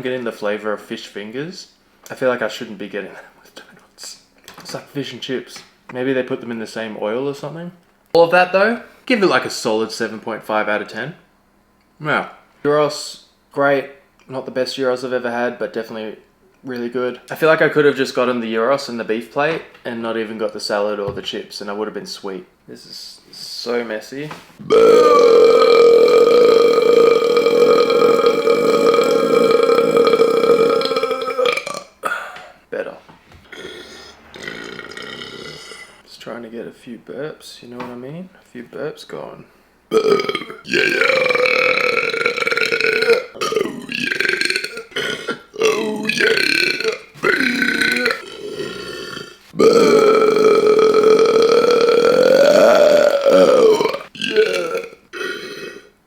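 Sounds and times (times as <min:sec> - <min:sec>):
long loud burp: 0:24.6 - 0:32.2, 0:33.5 - 0:36.0, 0:39.9 - 0:56.0.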